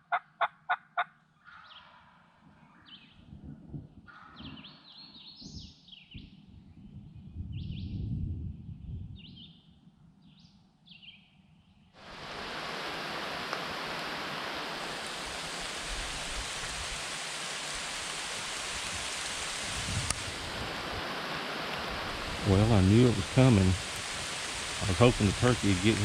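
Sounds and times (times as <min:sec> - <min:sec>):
heavy rain downpour: 0:12.0 - 0:26.0.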